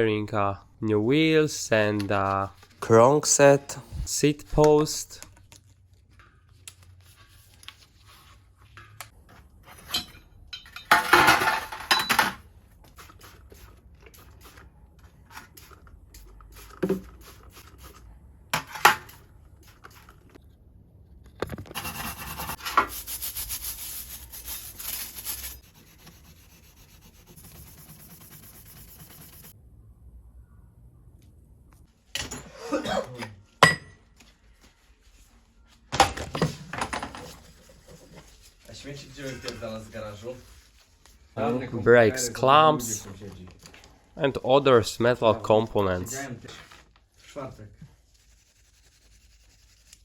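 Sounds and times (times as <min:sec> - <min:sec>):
rubbing on metal bicycle parts: 0:21.7 - 0:29.6, 0:47.9 - 0:50.0.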